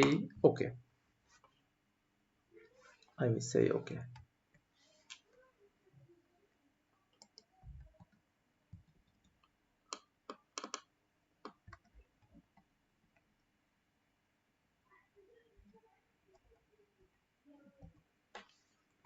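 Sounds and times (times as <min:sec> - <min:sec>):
computer mouse clicks: 0:07.2 - 0:12.6.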